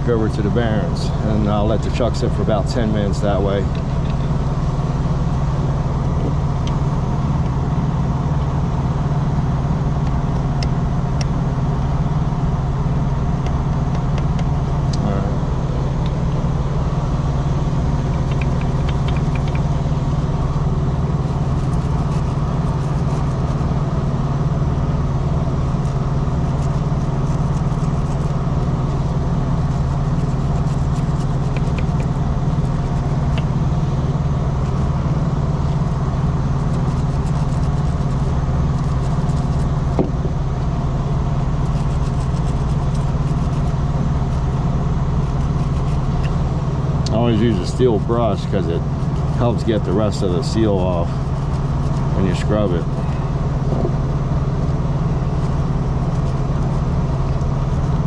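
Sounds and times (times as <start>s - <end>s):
truck engine idling: 0.0s - 58.0s.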